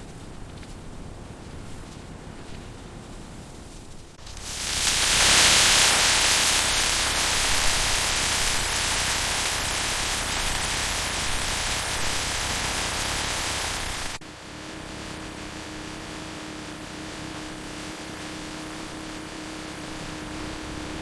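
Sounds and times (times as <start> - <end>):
loud hiss of rushing air: 4.2 - 14.2.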